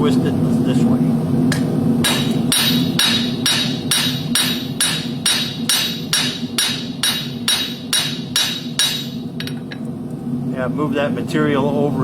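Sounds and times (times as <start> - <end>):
hammer ringing on horseshoe anvil: 2.0 - 9.8.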